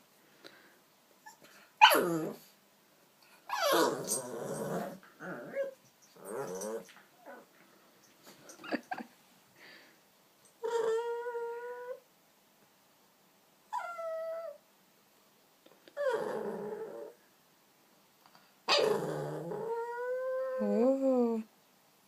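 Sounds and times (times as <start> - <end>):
puppy whining: 1.2 - 2.5, 3.4 - 7.5, 10.6 - 12.0, 13.7 - 14.6, 16.0 - 17.2, 18.7 - 20.9.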